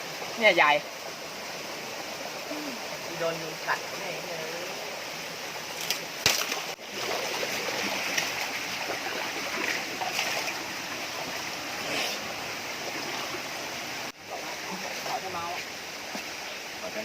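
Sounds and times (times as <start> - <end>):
water rushing over rocks: 0.0 - 17.0.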